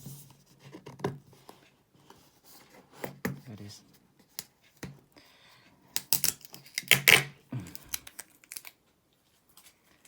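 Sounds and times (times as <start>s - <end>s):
plastic packaging crinkling: 7.8s - 8.8s.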